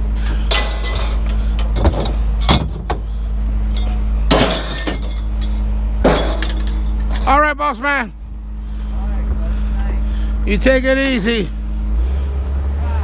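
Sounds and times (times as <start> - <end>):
vehicle engine idling: 0.0 - 13.0
scrap metal clanking: 0.2 - 3.1, 3.7 - 7.4.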